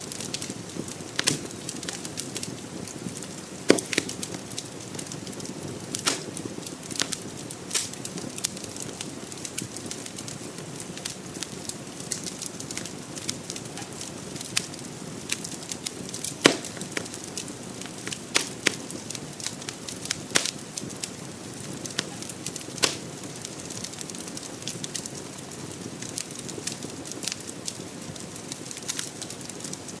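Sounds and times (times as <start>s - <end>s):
fire crackling and popping: 0.0s - 30.0s.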